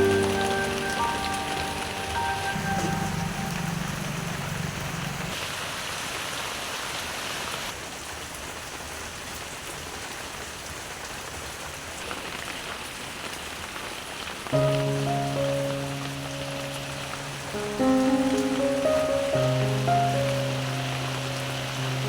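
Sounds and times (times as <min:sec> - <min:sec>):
low hum: 0:01.6 - 0:05.4
fish sizzling in hot oil: 0:12.1 - 0:22.0.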